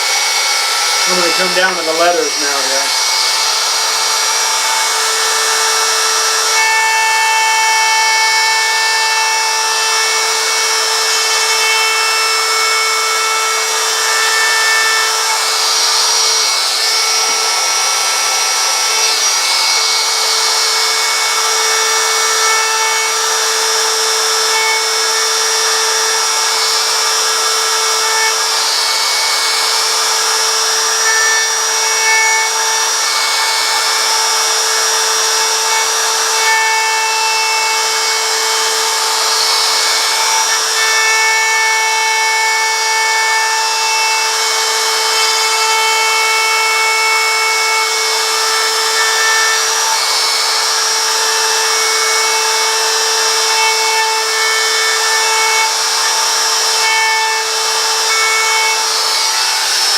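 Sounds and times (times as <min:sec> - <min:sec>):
router whining: 0:00.0 - 0:59.9
bit cutting wood hiss: 0:00.9 - 0:03.3.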